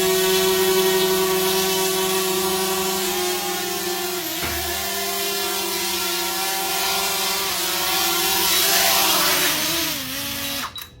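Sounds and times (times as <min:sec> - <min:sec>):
drone propellers whining: 0:02.7 - 0:10.4.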